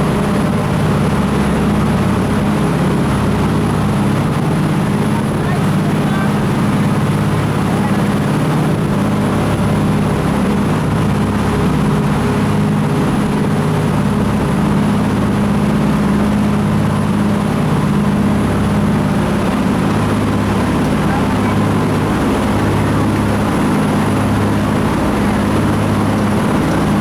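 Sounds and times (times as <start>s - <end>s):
boat engine droning: 0.0s - 27.0s.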